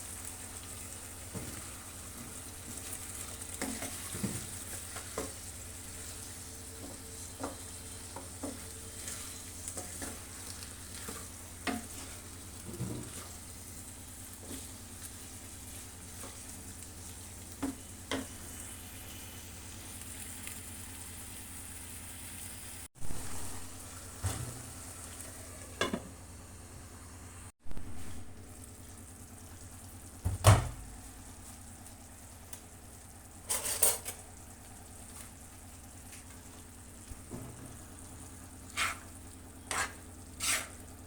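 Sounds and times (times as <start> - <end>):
meat sizzling in oil: 0.0 - 25.6.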